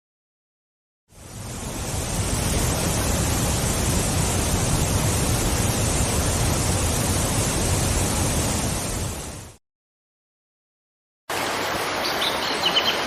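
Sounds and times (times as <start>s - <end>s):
waterfall rushing: 1.1s - 9.6s, 11.3s - 13.0s.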